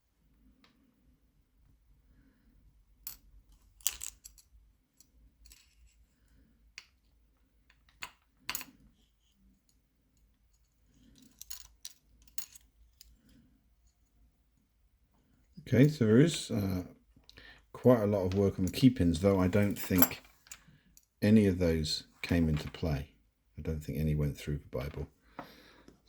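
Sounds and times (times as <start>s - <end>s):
metallic clicks of lock parts: 11.2s - 13.1s.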